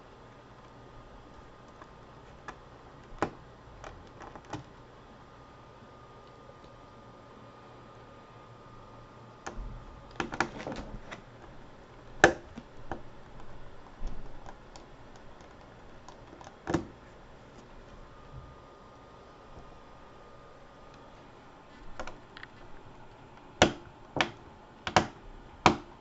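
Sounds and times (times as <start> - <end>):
screwdriver clicks and taps: 23.6 - 25.9.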